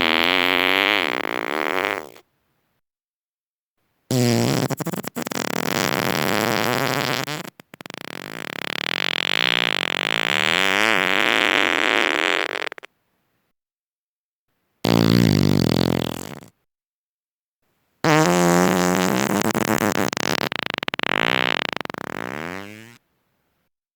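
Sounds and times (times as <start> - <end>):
person farting: 0.0 - 2.2, 4.1 - 12.9, 14.8 - 16.6, 18.0 - 23.0.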